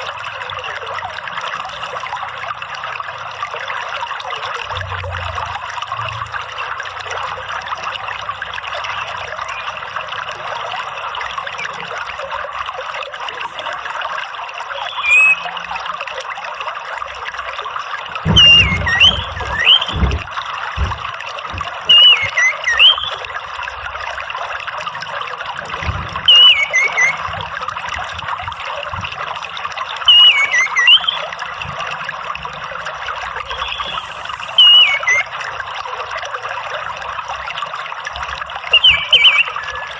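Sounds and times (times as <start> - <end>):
trickling running water: 0.0 - 39.9
thrush whistling calls: 8.8 - 10.0, 11.4 - 11.9, 14.7 - 15.7, 18.2 - 20.2, 21.8 - 23.3, 26.2 - 27.5, 30.0 - 31.4, 33.4 - 35.6, 38.7 - 39.9.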